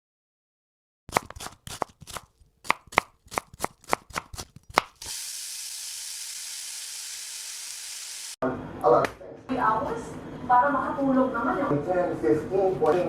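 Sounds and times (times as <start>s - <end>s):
knife chopping on cutting board: 1.1s - 5.0s
food sizzling in a pan: 5.0s - 8.4s.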